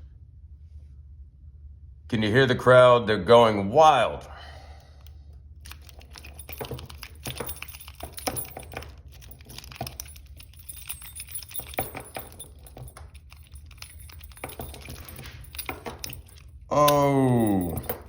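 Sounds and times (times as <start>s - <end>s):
metal tools clicking on padlock: 5.0s - 18.0s.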